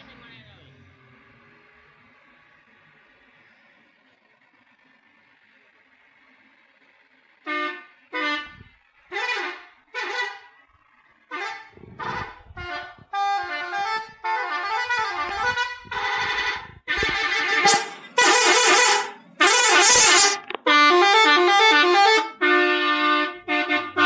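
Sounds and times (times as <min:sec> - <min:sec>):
musical air horn melody: 0:11.3 - 0:24.0.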